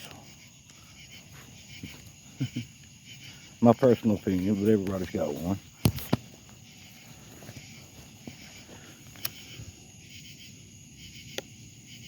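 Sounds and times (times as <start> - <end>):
crickets chirring: 0.0 - 12.0
sharp clicks: 9.2 - 9.5.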